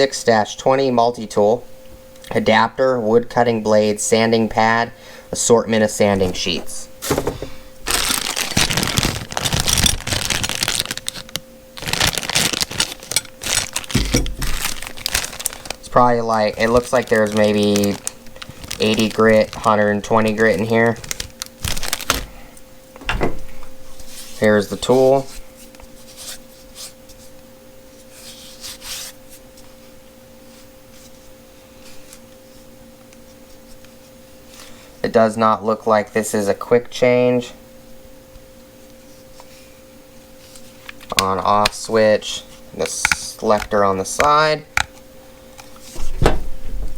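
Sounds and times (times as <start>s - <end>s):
faint background hum: 0.0s - 46.9s
packaging rustling and crinkling: 6.1s - 22.5s.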